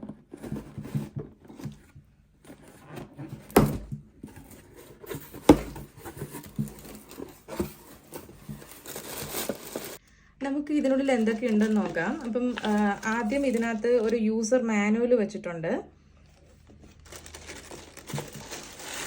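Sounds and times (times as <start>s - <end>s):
cardboard rubbing and scraping: 0.0s - 10.0s, 11.2s - 14.1s.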